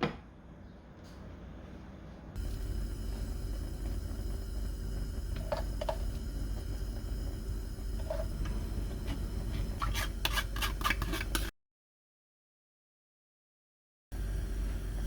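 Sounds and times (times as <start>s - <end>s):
mechanical hum: 0.0s - 11.5s, 14.1s - 15.0s.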